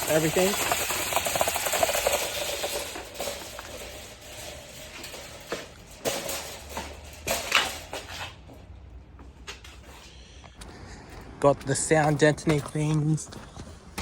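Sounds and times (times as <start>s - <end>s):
items knocking and clattering: 0.0s - 8.5s.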